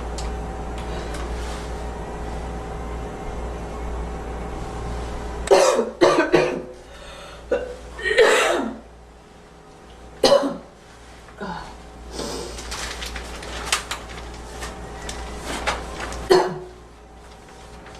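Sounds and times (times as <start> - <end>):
steady low hum: 0.0 - 17.9
girl coughing: 5.5 - 6.8, 7.5 - 8.8, 10.2 - 10.7, 16.3 - 16.8.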